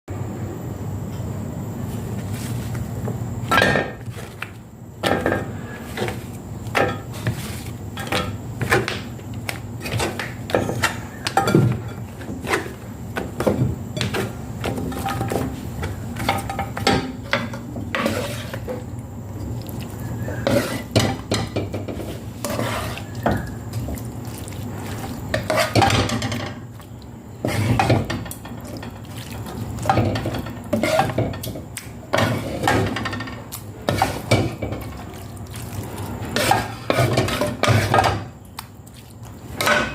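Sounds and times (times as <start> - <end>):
utensils clinking on bowls and pans: 9.9 - 12.8, 24.8 - 26.7, 27.4 - 35.2, 36.4 - 38.3, 39.6 - 39.9.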